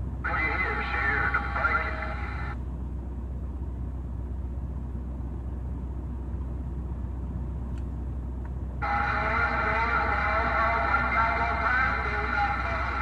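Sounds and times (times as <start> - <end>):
steady low hum: 0.0 - 13.0
radio static and hiss: 0.2 - 2.6, 8.8 - 13.0.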